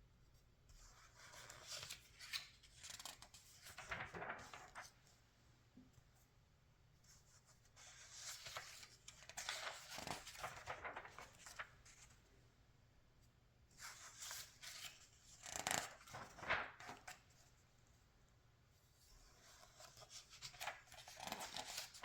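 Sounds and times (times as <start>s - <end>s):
magazine pages turning: 1.2s - 5.0s, 8.1s - 12.2s, 13.9s - 17.4s, 19.4s - 22.0s.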